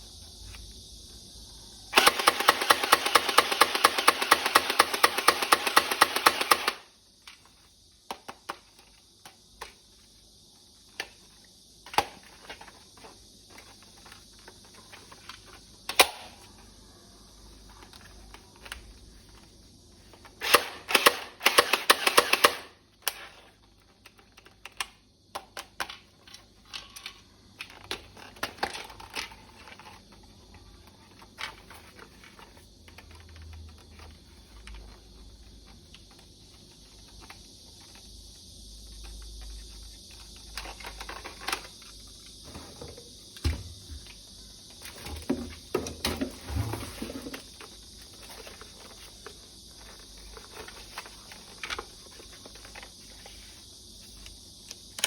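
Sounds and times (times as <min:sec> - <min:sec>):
plastic toy parts clicking: 0:24.0 - 0:29.8.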